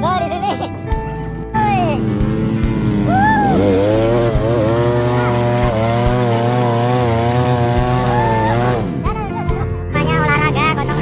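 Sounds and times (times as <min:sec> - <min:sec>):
motor running under heavy load: 0:01.7 - 0:09.0.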